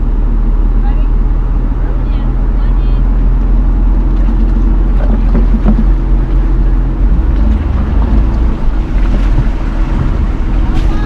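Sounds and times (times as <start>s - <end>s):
engine hum: 0.0s - 11.0s
heavy rumble: 0.0s - 11.0s.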